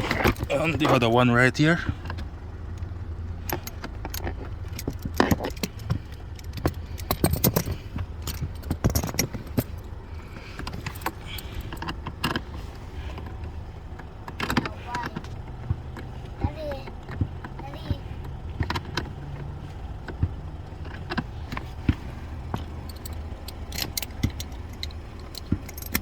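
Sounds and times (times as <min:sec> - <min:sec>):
steady low hum: 0:00.0 - 0:26.0
metallic clicks of screws and driver: 0:22.5 - 0:26.0.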